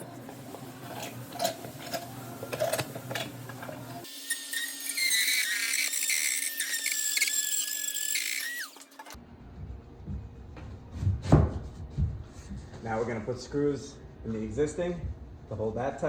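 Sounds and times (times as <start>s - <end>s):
high-pitched power tool on drywall: 4.0s - 9.0s.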